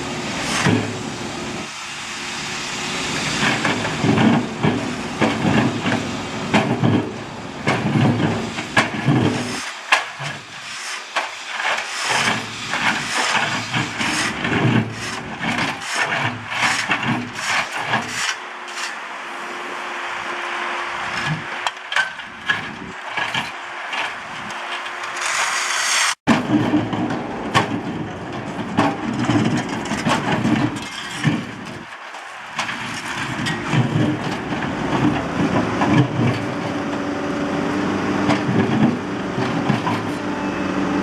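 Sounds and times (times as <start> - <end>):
backhoe machine noise: 0.0 - 41.0
metal clanks and rattles: 3.4 - 19.0, 21.0 - 36.6.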